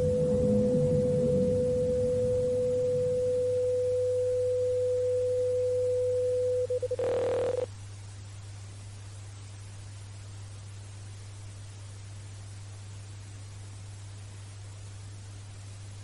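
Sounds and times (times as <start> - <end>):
steady alarm tone: 0.0 - 7.7
low hum and hiss: 0.0 - 16.0.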